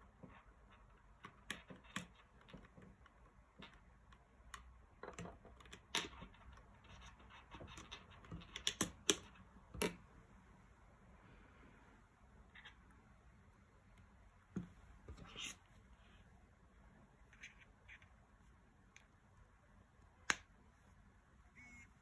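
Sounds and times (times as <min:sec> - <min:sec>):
plastic parts clicking and tapping: 0:00.2 - 0:06.8, 0:07.4 - 0:10.0.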